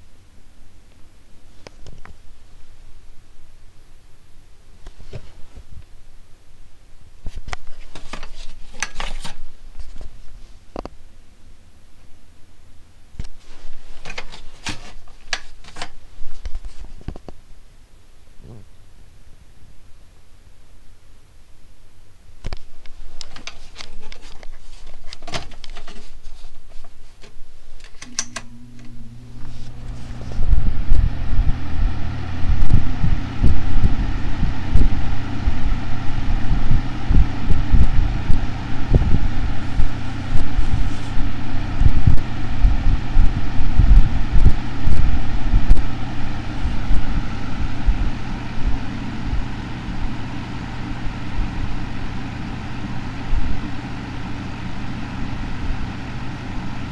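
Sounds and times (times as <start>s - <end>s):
fan motor humming: 7.3s - 11.1s, 12.0s - 17.1s, 22.4s - 56.9s
fan blades rushing air: 27.5s - 56.9s
handling clicks: 27.8s - 28.9s.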